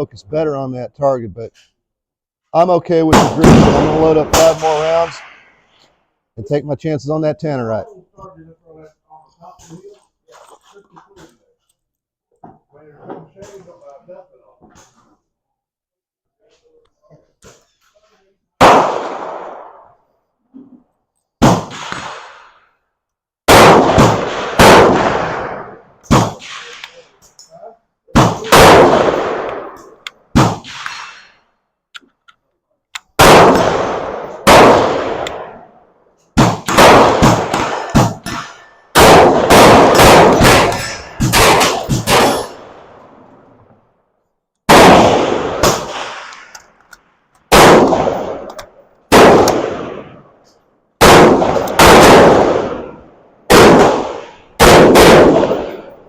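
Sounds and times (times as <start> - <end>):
rifle gunshots with echo: 2.9 - 5.5, 18.6 - 20.0, 21.4 - 22.6, 23.5 - 27.2, 28.1 - 31.4, 33.2 - 35.8, 36.4 - 43.6, 44.7 - 46.6, 47.5 - 50.4, 51.0 - 56.0.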